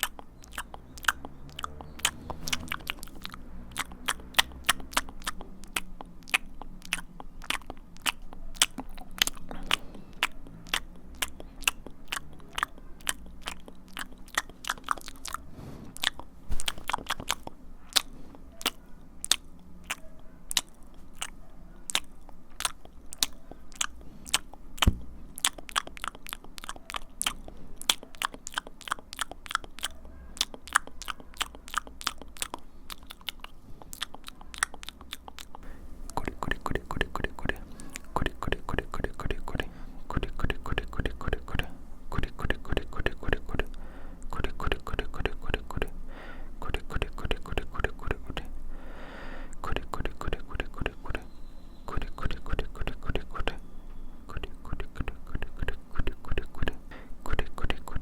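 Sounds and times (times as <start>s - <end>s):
wet mouth clicks and pops: 0.0s - 15.4s, 16.0s - 46.0s, 46.6s - 48.5s, 49.5s - 51.2s, 51.9s - 53.6s, 54.3s - 58.0s.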